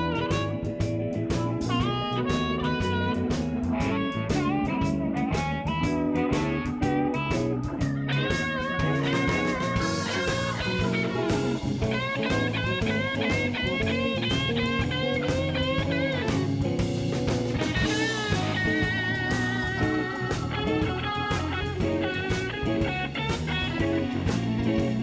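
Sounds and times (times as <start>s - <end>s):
bending lead guitar notes: 0.0s - 25.0s
blues rock music: 0.0s - 25.0s.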